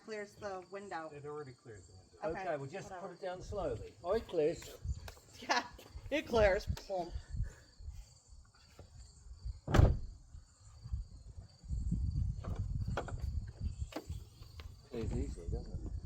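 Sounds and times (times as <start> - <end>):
heavy sharp thump: 9.6 - 10.0.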